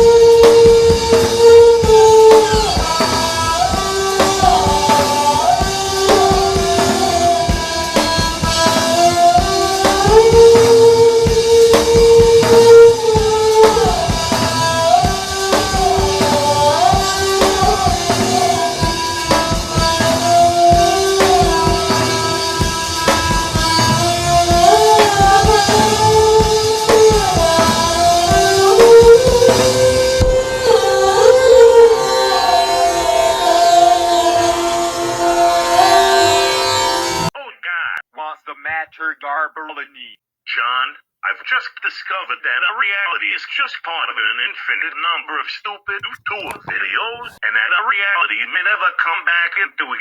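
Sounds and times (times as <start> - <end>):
steady drum beat: 0.0 - 30.5
rock music lead melody: 0.0 - 31.2.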